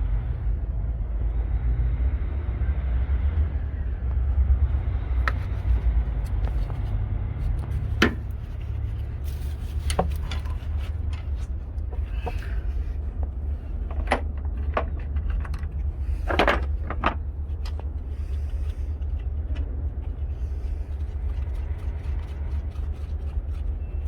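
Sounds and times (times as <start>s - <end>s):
diesel truck engine idling: 0.0s - 24.0s
sharp clicks and knocks: 7.6s - 8.8s, 9.6s - 12.6s, 13.2s - 20.2s.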